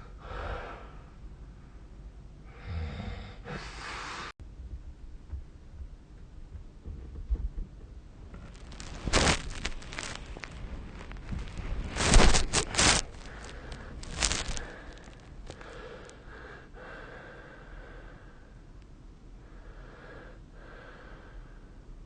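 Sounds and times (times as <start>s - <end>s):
person breathing noisily: 0.0s - 1.2s, 12.0s - 18.6s, 19.4s - 21.8s.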